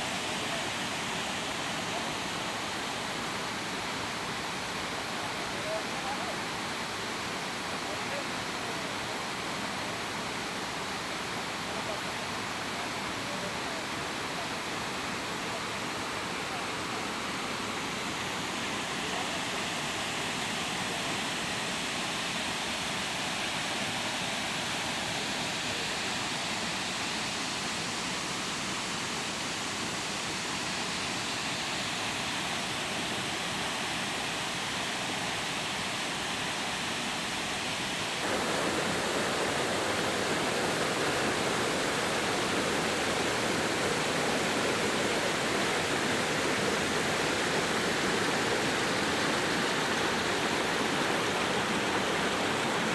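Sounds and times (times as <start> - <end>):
heavy rain pouring: 38.2 - 52.9.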